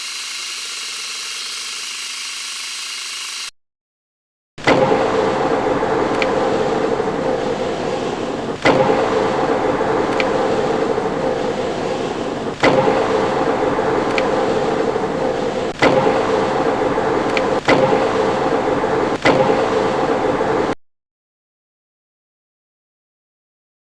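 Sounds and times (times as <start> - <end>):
metal lathe humming: 0.0 - 3.5.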